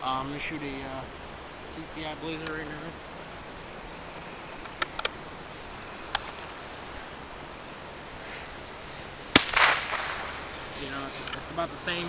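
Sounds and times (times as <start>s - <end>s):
gun handling clicks: 4.6s - 5.2s, 6.1s - 6.4s
rifle shot: 9.3s - 10.5s.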